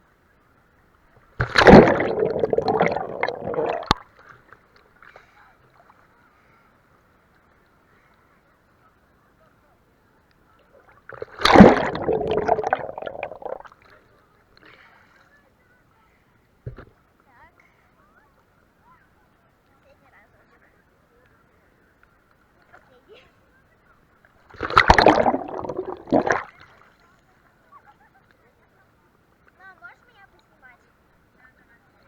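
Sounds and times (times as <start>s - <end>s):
sea water splashing: 1.4s - 4.0s, 11.1s - 13.7s, 24.6s - 26.6s.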